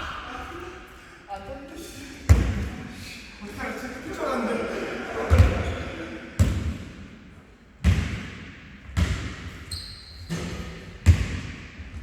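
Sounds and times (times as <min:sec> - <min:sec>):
basketball bouncing on gym floor: 0:06.4 - 0:06.9, 0:07.8 - 0:09.7, 0:10.3 - 0:11.7
short high squeak: 0:09.7 - 0:10.2.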